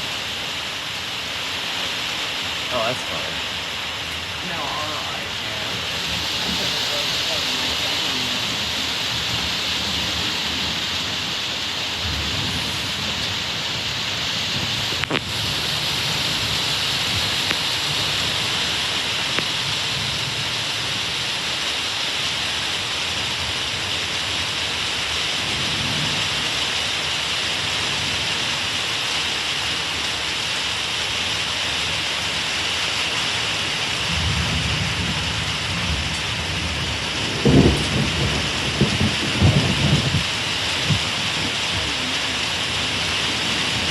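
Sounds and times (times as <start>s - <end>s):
heavy rain: 0.0s - 43.9s
thunder rumbling: 2.7s - 21.3s, 33.9s - 43.9s.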